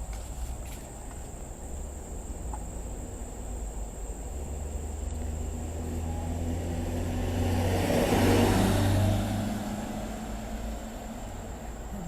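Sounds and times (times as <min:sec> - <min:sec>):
car passing by: 0:04.5 - 0:11.7.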